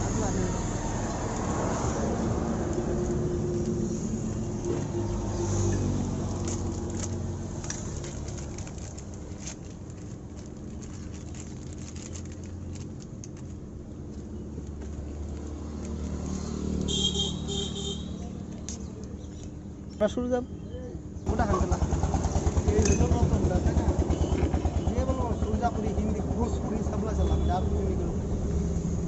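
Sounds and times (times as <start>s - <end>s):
motorcycle engine running: 21.3s - 26.5s.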